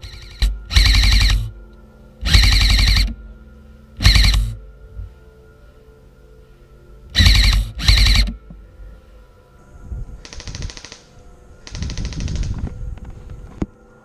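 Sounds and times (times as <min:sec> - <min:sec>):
airsoft rifle bursts: 0:00.0 - 0:01.6, 0:02.2 - 0:03.2, 0:04.0 - 0:04.6, 0:07.2 - 0:08.4, 0:10.2 - 0:12.6.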